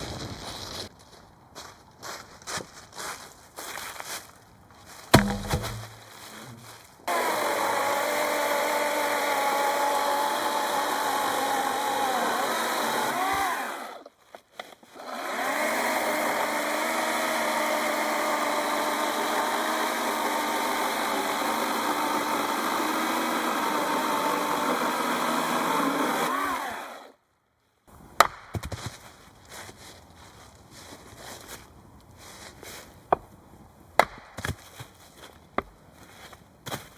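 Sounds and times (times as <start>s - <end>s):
sharp knock: 5.1s - 6.1s
motorised saw cutting wood: 7.1s - 14.0s, 15.0s - 27.2s.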